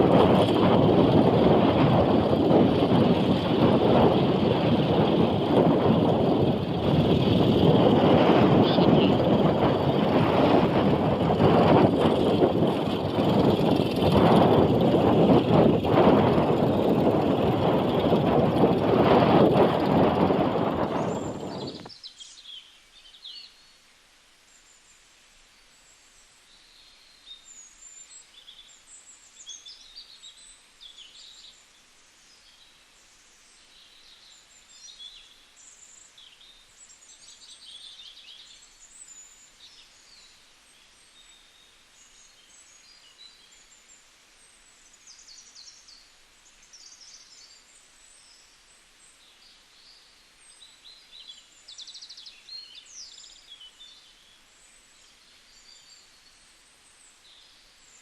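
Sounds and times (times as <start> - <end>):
small birds chirping and twittering: 0.0 - 58.0
faint steady hiss: 21.8 - 58.0.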